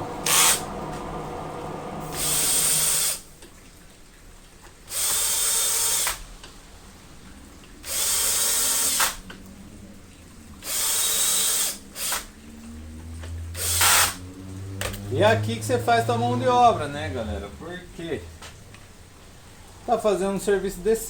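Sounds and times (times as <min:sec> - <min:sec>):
cordless power screwdriver running: 0:00.2 - 0:00.7, 0:02.1 - 0:03.2, 0:04.9 - 0:06.2, 0:07.8 - 0:09.2, 0:10.6 - 0:12.3, 0:13.6 - 0:14.2.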